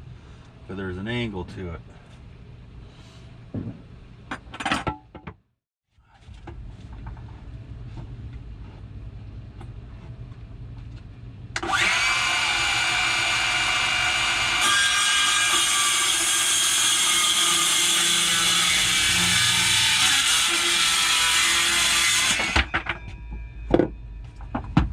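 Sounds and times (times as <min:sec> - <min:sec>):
low hum with light clicks: 0:06.4 - 0:11.6
power tool cutting wood: 0:11.6 - 0:22.8.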